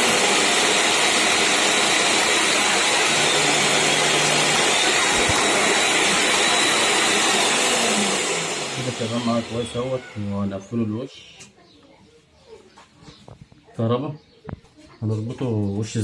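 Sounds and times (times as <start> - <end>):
vacuum cleaner motor running: 0.0 - 10.6.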